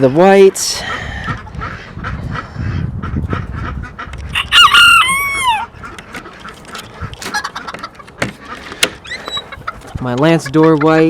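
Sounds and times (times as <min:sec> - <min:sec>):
rooster crowing: 0:04.4 - 0:05.7.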